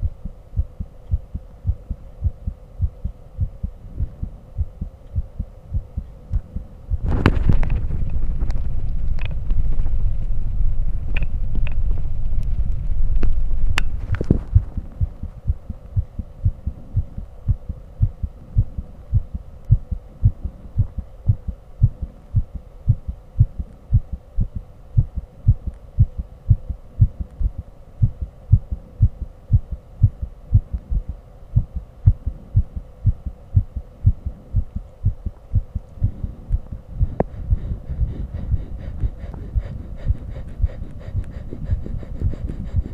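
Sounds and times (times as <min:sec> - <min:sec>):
faint steady hum: 0:00.0 - 0:42.9
heartbeats as low thumps: 0:00.0 - 0:42.9
rustling rumble with clicks: 0:03.0 - 0:24.6.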